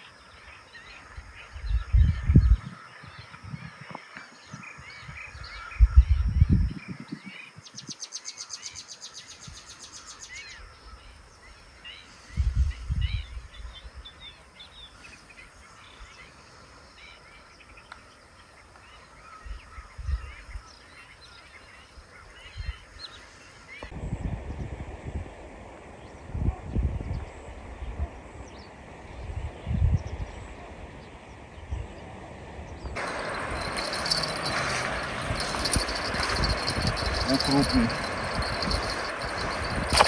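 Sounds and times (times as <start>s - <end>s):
birds calling: 32.8s - 40.0s
high rattling bird trill: 33.0s - 40.0s.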